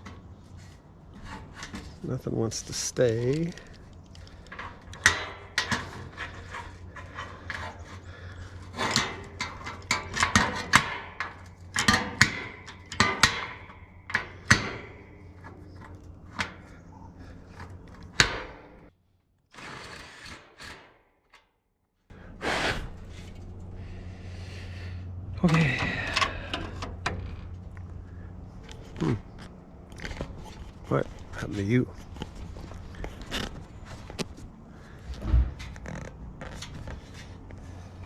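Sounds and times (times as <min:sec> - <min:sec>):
low hum: 0:22.1 - 0:38.0.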